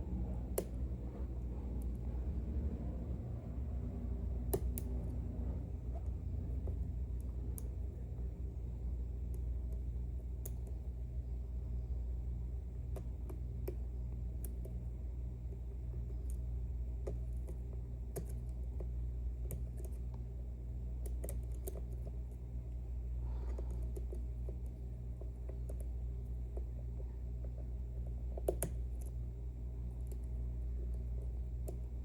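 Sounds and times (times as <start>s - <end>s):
low hum: 0.0s - 32.0s.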